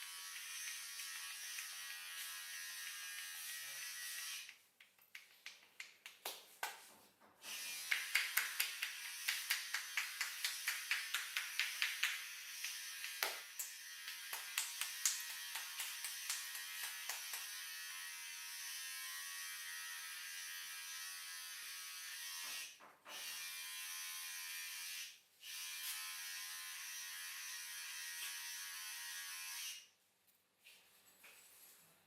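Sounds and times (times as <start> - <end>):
electric motor buzzing: 0.0 - 4.5.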